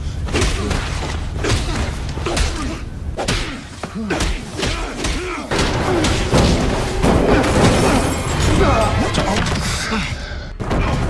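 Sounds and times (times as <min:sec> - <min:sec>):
constant low rumble: 0:00.0 - 0:09.6
thuds and slams of blows: 0:00.2 - 0:09.8.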